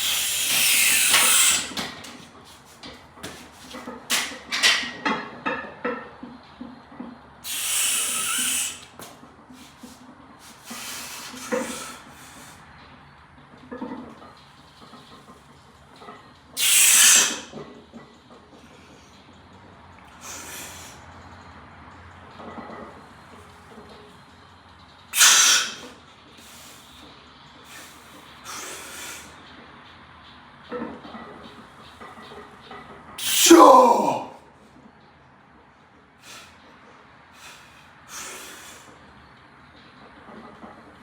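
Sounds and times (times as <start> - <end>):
man's loud hissing exhale: 0.0 - 1.8, 7.4 - 8.9, 10.6 - 12.6, 16.6 - 17.5, 20.2 - 21.0, 25.2 - 26.9, 27.7 - 29.4, 33.2 - 34.4, 36.2 - 36.6, 37.3 - 38.9.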